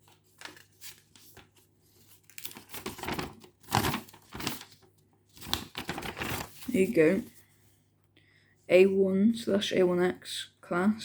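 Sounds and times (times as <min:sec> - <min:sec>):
packaging crinkling and rustling: 0:00.0 - 0:06.9.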